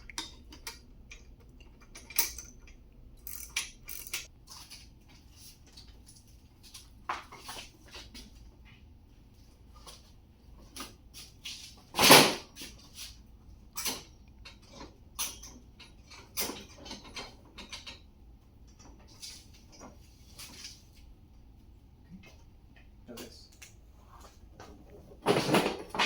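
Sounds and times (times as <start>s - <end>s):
metal parts clicking and knocking: 0.0s - 4.8s.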